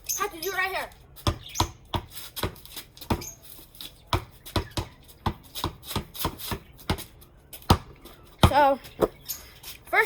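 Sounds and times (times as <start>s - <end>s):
basketball bouncing on hard floor: 1.2s - 3.3s, 7.7s - 8.6s.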